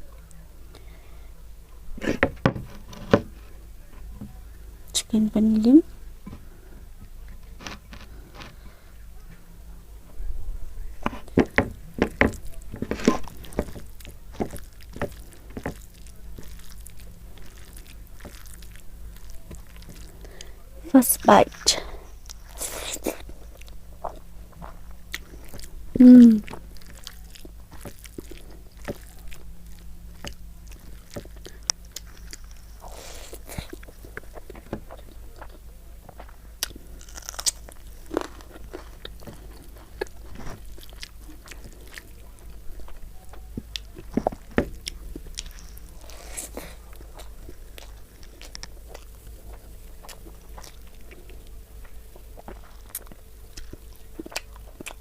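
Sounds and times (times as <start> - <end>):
wet chewing and biting: 11.2 - 20.6, 21.5 - 55.0
person humming: 26.0 - 26.5.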